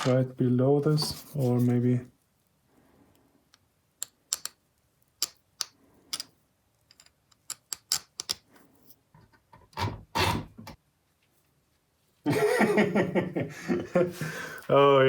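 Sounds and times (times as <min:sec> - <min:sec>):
small metal parts clicking: 0:04.0 - 0:08.5.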